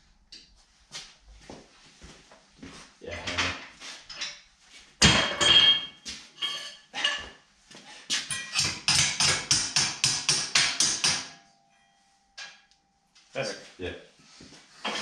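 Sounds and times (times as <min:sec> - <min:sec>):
hammer striking sheet metal: 0:08.3 - 0:11.6.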